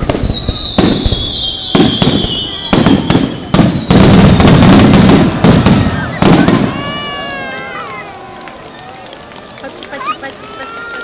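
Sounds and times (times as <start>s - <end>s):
firework shells booming: 0.0s - 7.2s
descending firework whistle: 0.0s - 8.6s.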